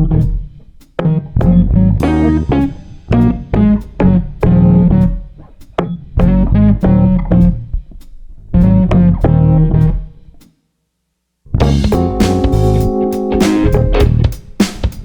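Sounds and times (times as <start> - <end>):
guitar and bass riff: 0.0 - 7.7, 8.6 - 10.2, 11.5 - 14.4.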